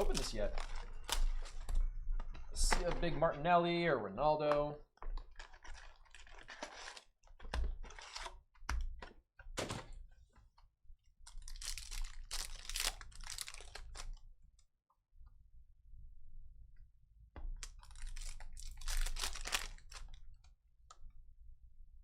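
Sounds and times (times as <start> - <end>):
plastic wrapping crinkling and tearing: 0.0 - 2.9, 5.2 - 7.1, 11.3 - 14.2, 17.6 - 20.2.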